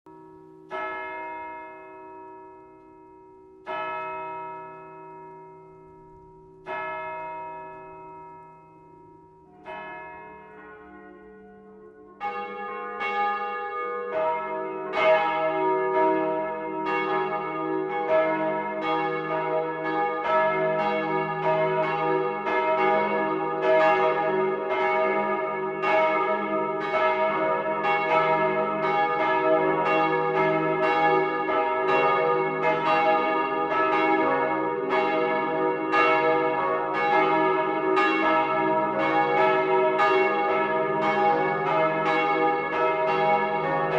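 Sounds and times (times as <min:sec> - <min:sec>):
church bells ringing in full peal: 0:00.1 - 0:43.9.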